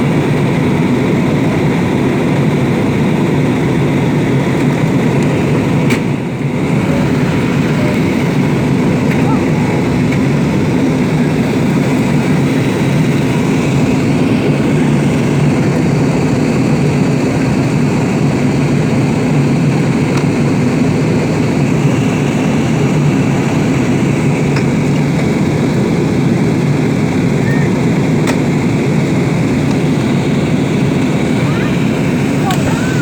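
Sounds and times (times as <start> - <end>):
airliner cabin engine roar: 0.0 - 33.0.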